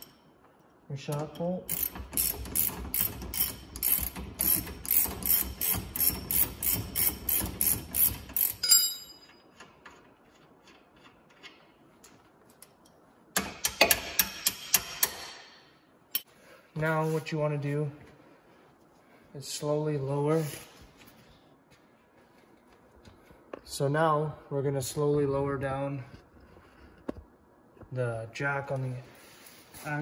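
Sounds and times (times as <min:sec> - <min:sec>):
ratchet wrench clicking: 0:01.3 - 0:08.8
short metallic ring: 0:08.6 - 0:09.5.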